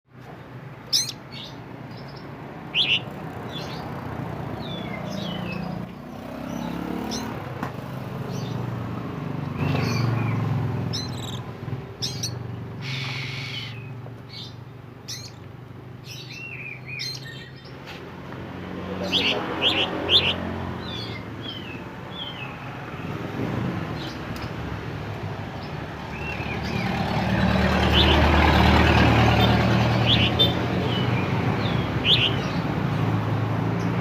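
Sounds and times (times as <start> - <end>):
bird chirping and whistling: 0.9 - 1.2, 2.8 - 3.1, 9.6 - 14.5, 15.1 - 15.4, 19.1 - 20.4, 31.8 - 32.4.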